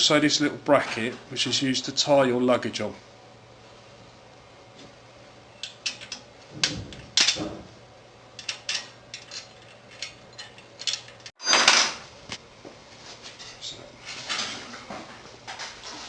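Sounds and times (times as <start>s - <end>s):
small metal parts clicking: 8.4s - 11.7s.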